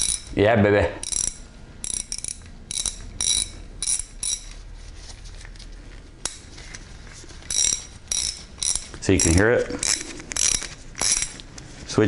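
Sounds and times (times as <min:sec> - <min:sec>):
ratchet clicking: 0:00.0 - 0:00.4, 0:01.0 - 0:04.6, 0:07.5 - 0:11.4.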